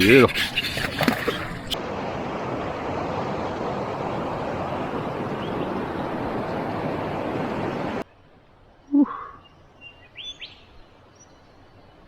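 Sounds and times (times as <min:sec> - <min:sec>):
river water rushing: 0:00.9 - 0:08.4.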